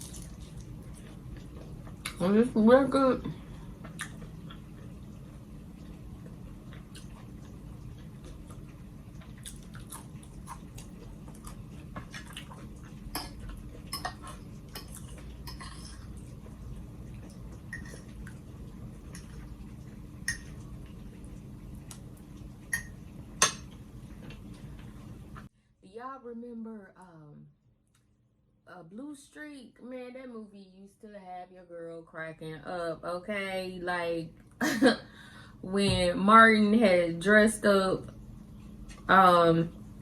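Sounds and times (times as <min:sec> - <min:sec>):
chewing: 0:00.0 - 0:02.2, 0:03.8 - 0:22.2
steady low hum: 0:00.0 - 0:40.0.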